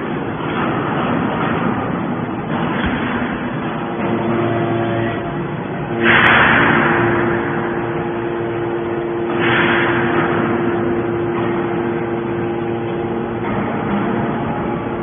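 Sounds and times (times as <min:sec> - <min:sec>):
machine hum: 0:00.0 - 0:15.0
hydraulic rushing surge: 0:02.2 - 0:15.0.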